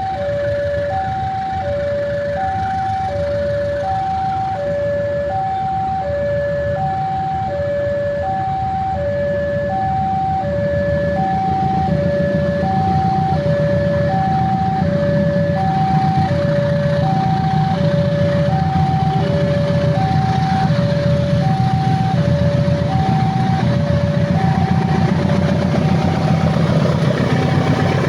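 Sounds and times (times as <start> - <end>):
two-tone electronic warning alarm: 0.0 - 28.0
low rumble: 9.7 - 28.0.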